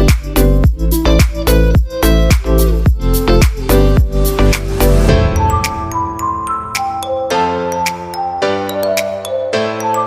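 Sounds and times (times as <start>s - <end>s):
electronic dance music: 1.1s - 9.1s.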